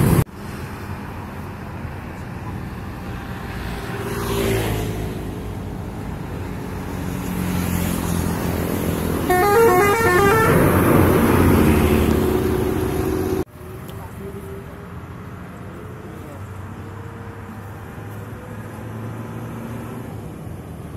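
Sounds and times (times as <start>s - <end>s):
bus engine rumbling: 0.0s - 4.0s, 4.8s - 20.9s
vehicle rushing past: 2.8s - 13.5s
bus horn playing musical notes: 9.2s - 11.2s.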